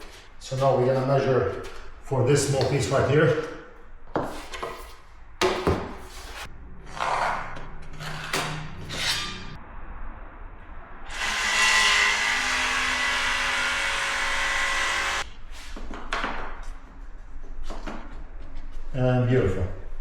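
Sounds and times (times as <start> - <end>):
electric saw cutting plank: 11.1 - 15.3.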